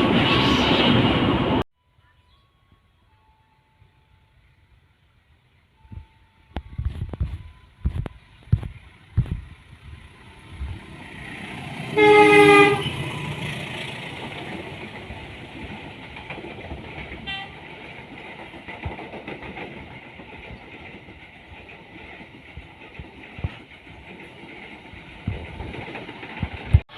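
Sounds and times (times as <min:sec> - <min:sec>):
train rumbling on tracks: 0:00.0 - 0:01.6, 0:05.8 - 0:26.9
train horn blast: 0:11.9 - 0:13.4, 0:17.2 - 0:17.6.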